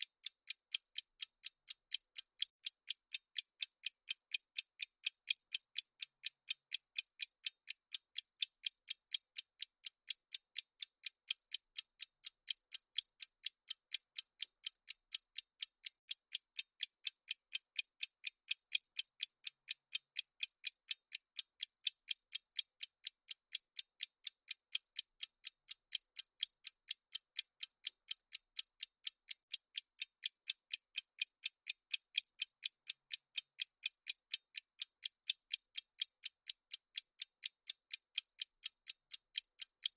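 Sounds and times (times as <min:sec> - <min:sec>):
clock ticking: 0:00.0 - 0:39.9.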